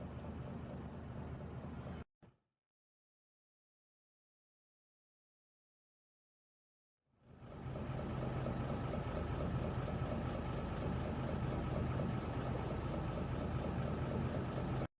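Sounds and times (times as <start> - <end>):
boat engine humming: 0.0 - 2.0, 7.2 - 14.9.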